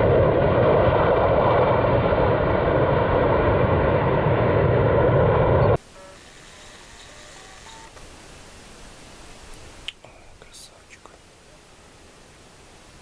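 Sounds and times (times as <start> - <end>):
faint short beeps: 5.9 - 8.0.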